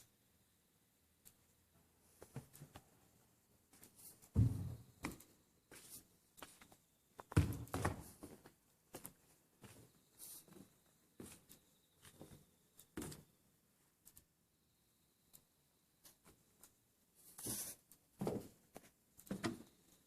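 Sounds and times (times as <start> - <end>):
dull thumps: 4.3 - 4.8.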